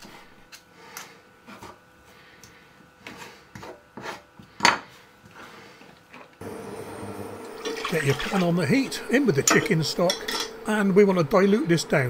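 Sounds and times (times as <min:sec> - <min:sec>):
forks scraping on chopping board: 0:03.1 - 0:04.3.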